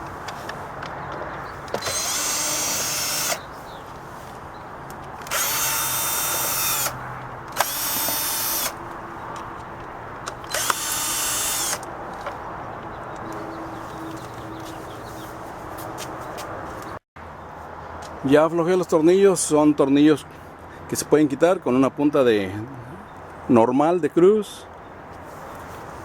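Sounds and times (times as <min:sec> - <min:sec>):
power drill spinning: 0:01.6 - 0:03.6, 0:05.2 - 0:09.1, 0:10.3 - 0:11.9.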